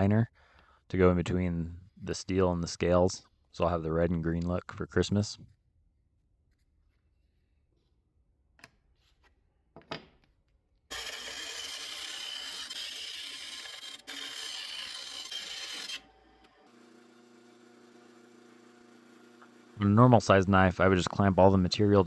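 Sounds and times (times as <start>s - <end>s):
abrasive tool grinding: 10.9s - 22.0s.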